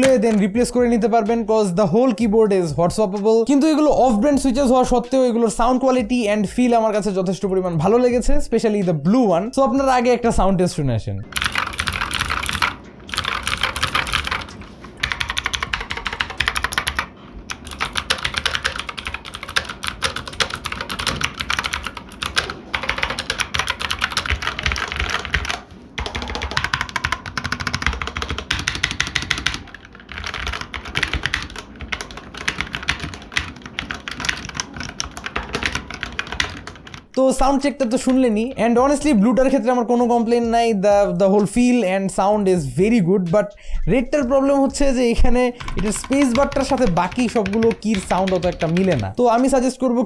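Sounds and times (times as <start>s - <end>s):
mechanical keyboard key clacks: 11.3s - 37.0s.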